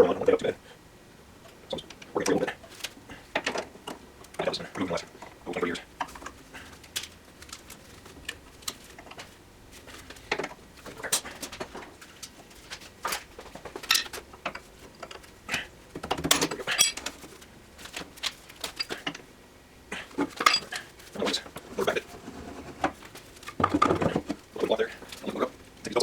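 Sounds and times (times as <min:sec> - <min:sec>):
loose parts rattling: 0:10.0 - 0:15.3, 0:16.0 - 0:19.2, 0:20.1 - 0:21.9.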